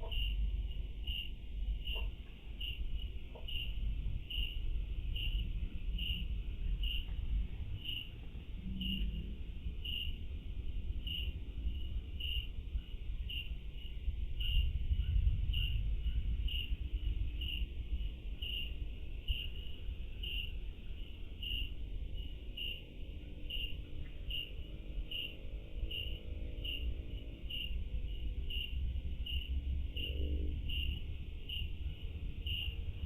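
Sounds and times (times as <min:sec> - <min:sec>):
insect chirping: 0:00.0 - 0:07.1, 0:07.7 - 0:33.0
steady low rumble: 0:00.0 - 0:24.7
faint hum: 0:00.0 - 0:33.0.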